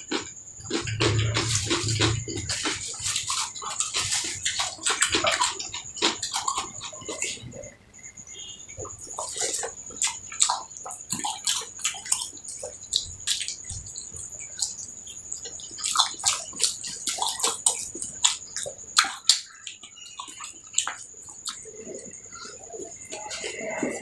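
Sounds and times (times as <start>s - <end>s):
wet mouth smacking eating: 9.1s - 24.0s.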